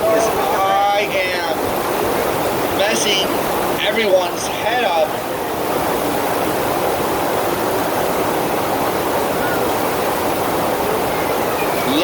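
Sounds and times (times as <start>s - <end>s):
water rushing over wave surface: 0.0s - 12.0s.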